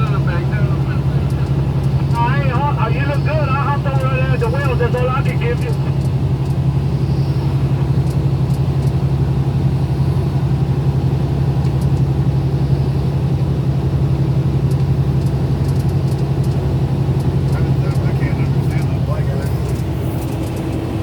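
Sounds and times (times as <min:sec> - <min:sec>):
car engine and road noise: 0:00.0 - 0:21.0
faint ticks: 0:14.7 - 0:16.6.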